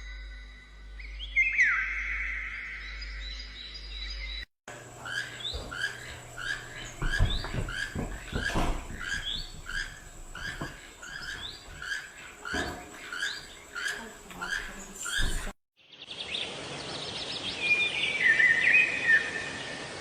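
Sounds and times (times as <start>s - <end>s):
bird chirping: 0.9s - 19.6s
low thumps: 5.4s - 13.0s.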